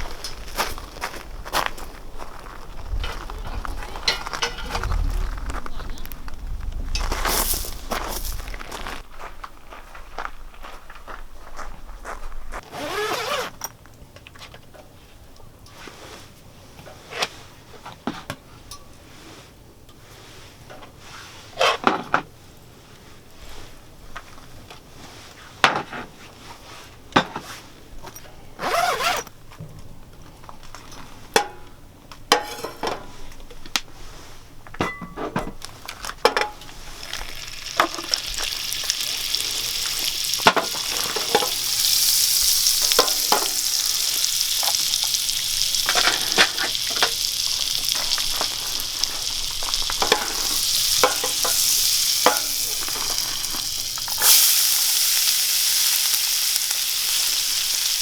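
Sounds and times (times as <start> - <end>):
utensil scraping a pan: 36.6 - 54.7
food sizzling in a pan: 36.7 - 58.0.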